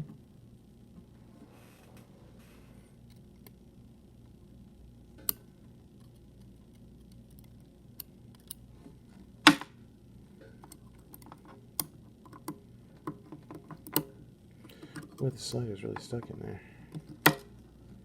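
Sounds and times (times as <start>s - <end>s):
small metal clicks and taps: 10.6s - 15.2s.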